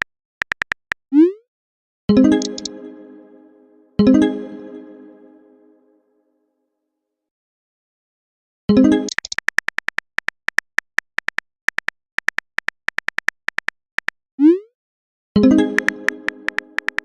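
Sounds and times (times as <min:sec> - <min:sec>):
keyboard tap clicks: 0:00.0 - 0:01.0, 0:02.4 - 0:02.7, 0:09.1 - 0:14.1, 0:15.8 - 0:17.0.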